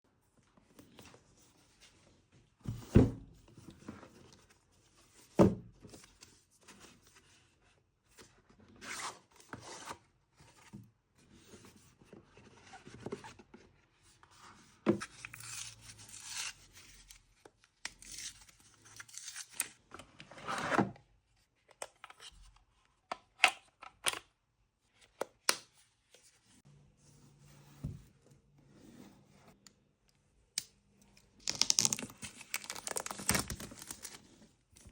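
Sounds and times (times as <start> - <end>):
packaging rustling and tearing: 31.4 - 34.3.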